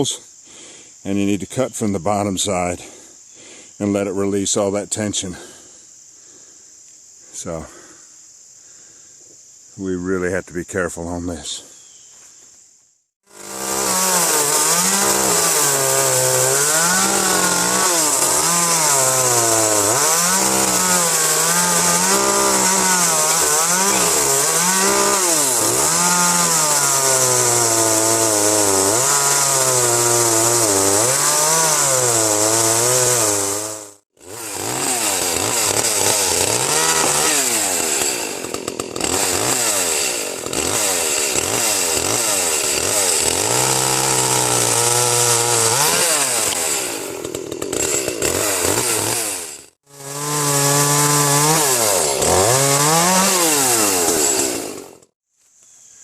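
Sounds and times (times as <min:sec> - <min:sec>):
chainsaw cutting wood: 0:13.2 - 0:55.2.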